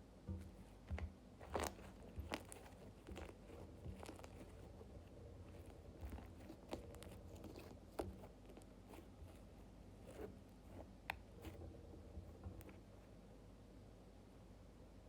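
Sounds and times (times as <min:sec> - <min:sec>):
slime crackling and popping: 0:01.4 - 0:04.9.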